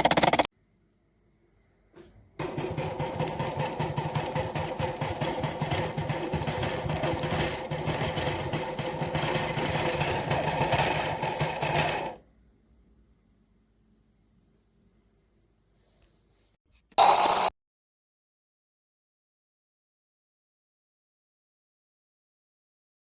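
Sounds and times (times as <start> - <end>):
coffee grinder grinding beans: 2.4 - 12.2, 17.0 - 17.5.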